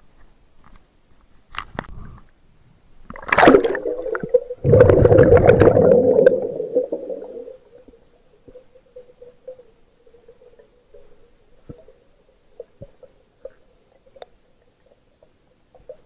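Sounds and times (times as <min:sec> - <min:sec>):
gurgling breath: 0:03.7 - 0:07.6.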